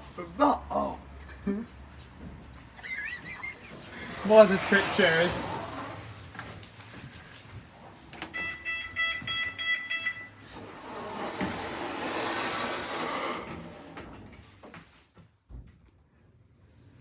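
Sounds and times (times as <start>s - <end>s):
moving lift rushing noise: 3.4s - 6.5s, 10.4s - 14.5s
lift beeper beeping: 8.3s - 10.5s.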